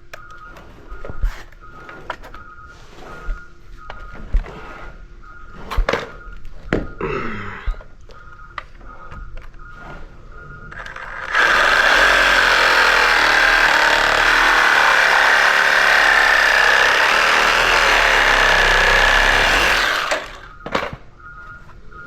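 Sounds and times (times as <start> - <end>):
power tool whining: 10.7 - 20.6.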